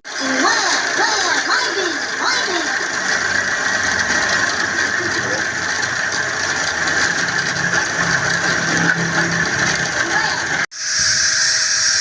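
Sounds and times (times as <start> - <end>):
machinery mechanical clatter: 0.1 - 10.6.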